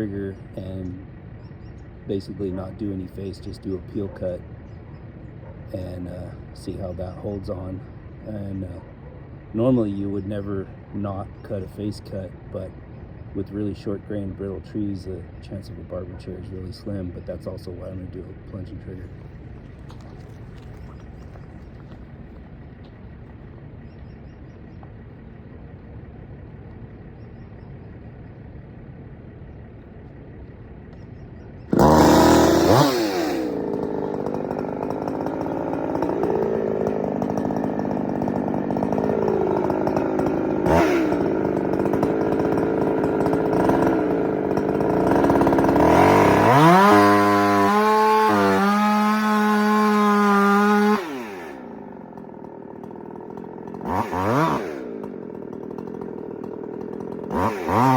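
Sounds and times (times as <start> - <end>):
chainsaw cutting wood: 16.1 - 23.4, 29.6 - 57.9.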